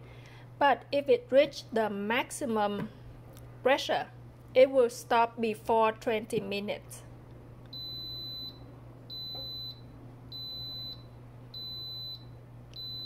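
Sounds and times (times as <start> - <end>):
pressure cooker beeping: 7.8 - 11.0, 11.6 - 12.2, 12.8 - 13.0.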